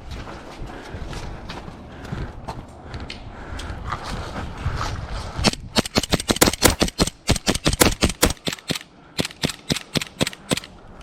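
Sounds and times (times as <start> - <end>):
airsoft pistol shots: 5.7 - 10.7.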